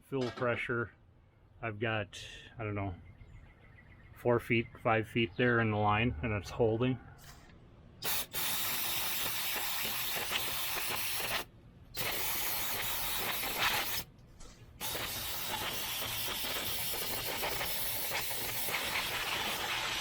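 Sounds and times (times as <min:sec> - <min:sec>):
aerosol spray hissing: 0:08.0 - 0:14.1, 0:14.8 - 0:20.0.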